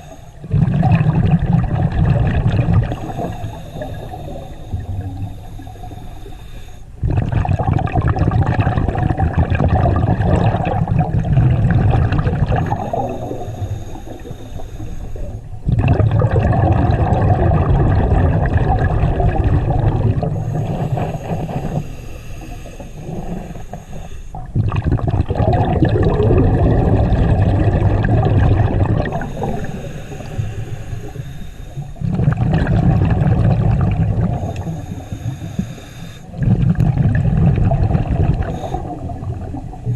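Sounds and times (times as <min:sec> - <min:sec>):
regulator hissing inhale: 0:00.0 - 0:00.4, 0:02.9 - 0:07.0, 0:12.6 - 0:15.6, 0:20.2 - 0:24.5, 0:29.0 - 0:32.1, 0:34.2 - 0:36.4, 0:38.3 - 0:39.6
bubbles gurgling underwater: 0:00.0 - 0:05.4, 0:07.0 - 0:13.6, 0:15.2 - 0:21.9, 0:24.3 - 0:30.2, 0:32.0 - 0:35.0, 0:36.2 - 0:39.9.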